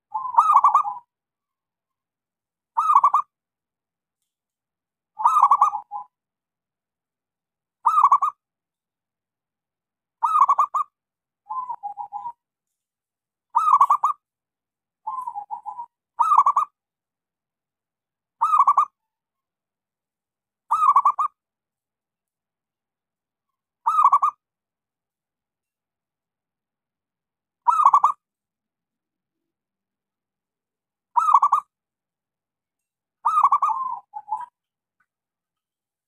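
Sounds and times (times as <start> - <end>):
dove cooing: 11.5 - 12.4, 15.1 - 16.6, 33.2 - 34.6.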